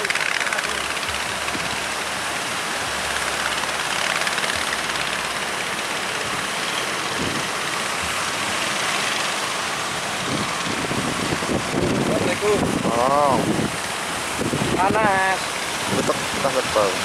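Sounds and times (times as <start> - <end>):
surf breaking: 0.0 - 17.0
strong wind: 4.5 - 17.0.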